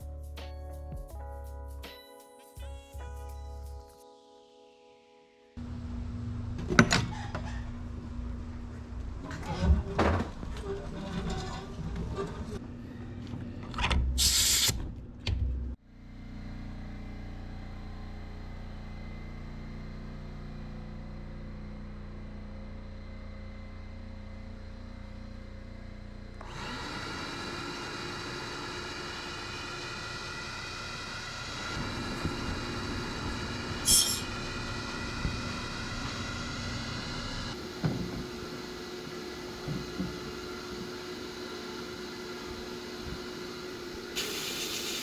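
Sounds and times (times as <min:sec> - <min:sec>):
loud hiss of blasting air: 0:14.2 - 0:14.8, 0:33.8 - 0:34.3, 0:44.2 - 0:45.0
steady machine hum: 0:15.8 - 0:26.4.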